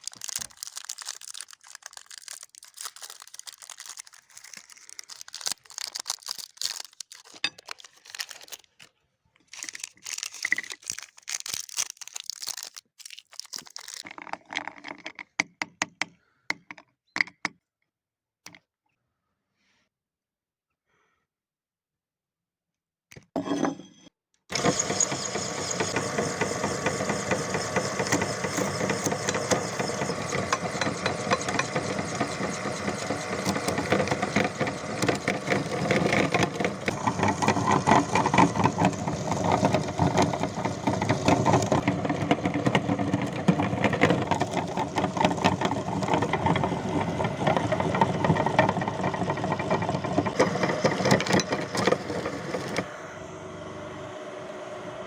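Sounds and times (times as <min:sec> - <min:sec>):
candy crackling in grinder auger: 0:00.0 - 0:08.9, 0:09.5 - 0:15.0, 0:24.5 - 0:52.9
electric meat grinder motor hum: 0:24.5 - 0:55.0.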